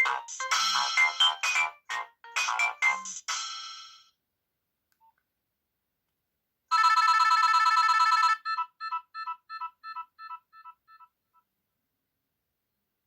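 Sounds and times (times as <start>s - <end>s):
mobile phone ringtone: 6.7s - 11.1s.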